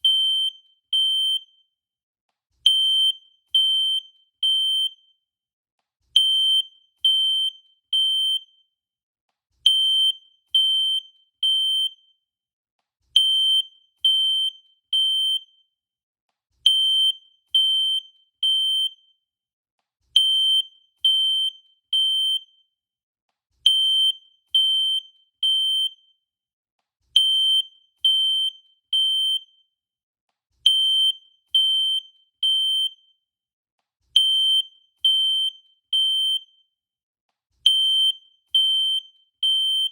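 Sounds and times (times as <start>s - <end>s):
fire alarm beeping: 37.7s - 39.9s.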